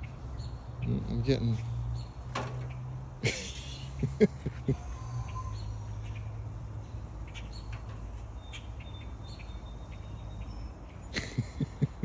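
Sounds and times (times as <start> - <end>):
bird chirps: 5.1 - 11.2.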